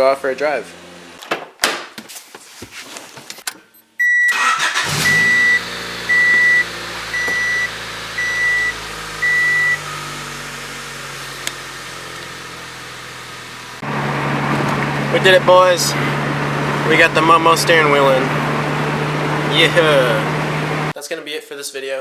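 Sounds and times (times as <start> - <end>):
car engine starting and idling: 0.0 - 1.2, 4.3 - 21.0
car warning chime beeping: 4.0 - 11.1.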